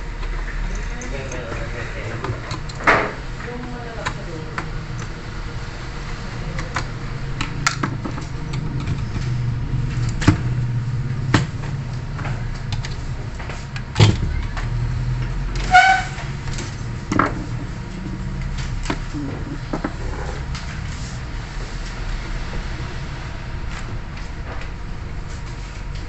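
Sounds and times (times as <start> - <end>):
steady low hum: 0.0 - 26.0
clicks and knocks of handling: 0.2 - 5.1, 6.1 - 21.0.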